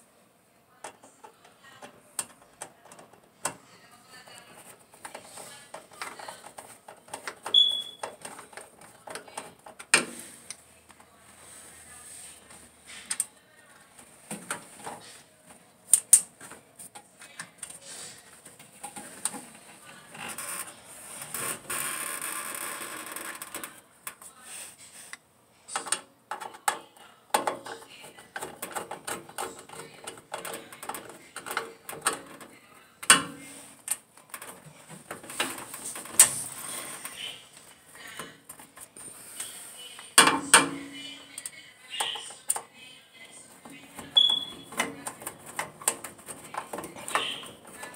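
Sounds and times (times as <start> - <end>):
hand tools and metal parts clattering: 43.6 - 47.9.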